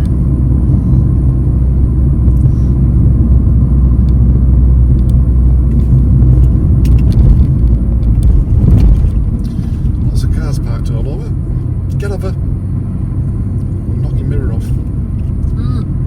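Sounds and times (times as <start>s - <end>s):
car engine and road noise: 0.0s - 16.0s.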